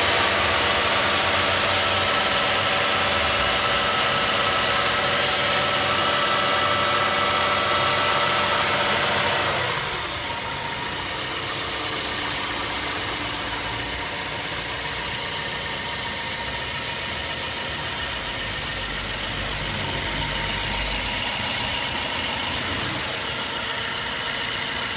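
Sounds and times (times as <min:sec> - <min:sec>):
petrol engine idling: 0:00.0 - 0:24.9.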